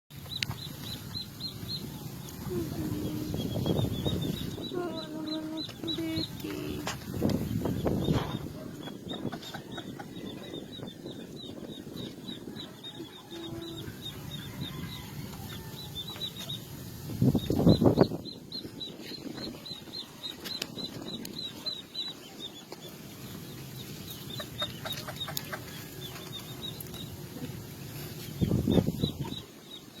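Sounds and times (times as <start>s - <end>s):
rapid high chirping: 2.9s - 14.7s, 16.0s - 22.5s.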